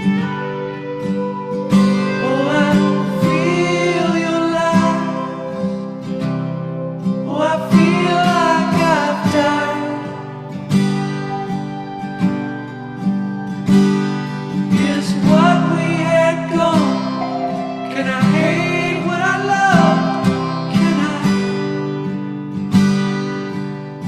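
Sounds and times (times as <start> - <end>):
strummed acoustic guitar: 0.0 - 24.0
person singing: 2.0 - 5.8, 7.3 - 10.2, 14.7 - 21.8.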